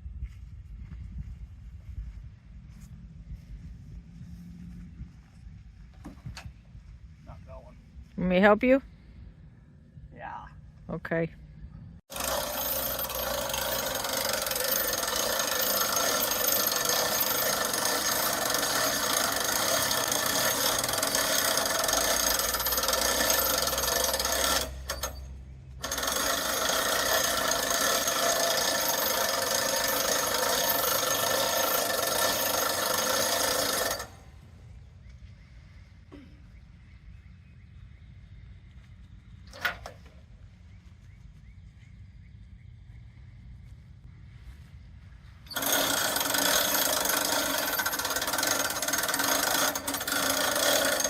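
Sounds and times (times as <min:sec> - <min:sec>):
band saw cutting log: 0:12.1 - 0:34.2, 0:45.5 - 0:51.0.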